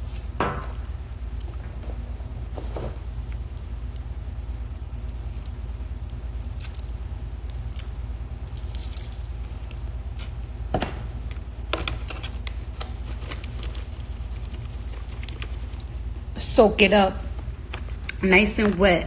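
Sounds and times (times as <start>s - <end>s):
steady low hum: 0.0s - 19.0s
chewing clicks and wet squishes: 5.3s - 10.4s, 15.2s - 16.0s.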